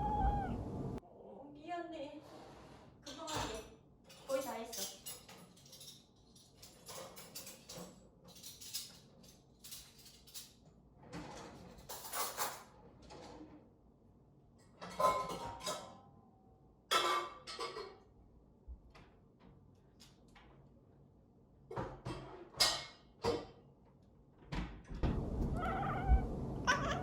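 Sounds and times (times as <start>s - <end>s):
dishes clattering: 16.9s - 18.0s.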